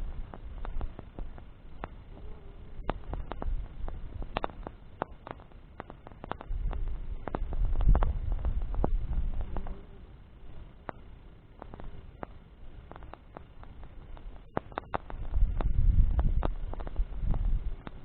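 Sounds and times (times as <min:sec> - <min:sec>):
bonfire crackling and popping: 0:00.0 - 0:18.0
low rumble: 0:06.3 - 0:10.8, 0:13.8 - 0:18.0.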